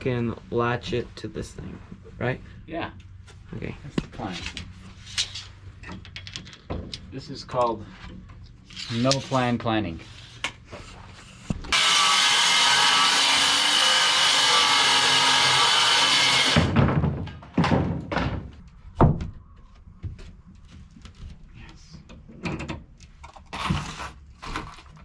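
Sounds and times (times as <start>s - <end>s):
power tool running: 11.7s - 16.7s
knocks of wood and tools: 16.3s - 21.4s.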